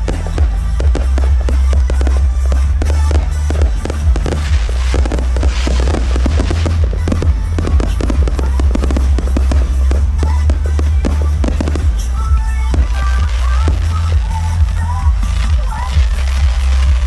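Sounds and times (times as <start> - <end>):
fireworks bangs and crackling: 0.0 - 17.0
loud music with heavy bass: 0.0 - 17.0.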